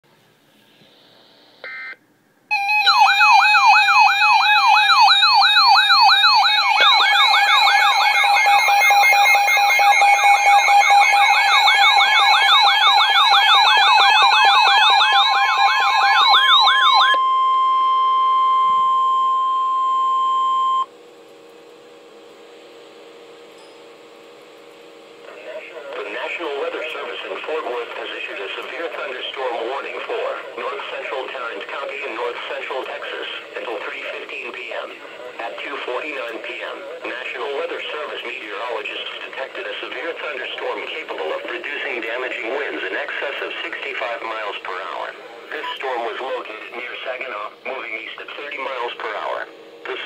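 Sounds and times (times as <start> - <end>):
warbling alert tones: 2.5 - 17.2
steady alert tone: 2.5 - 17.6
short beep: 17.2 - 20.9.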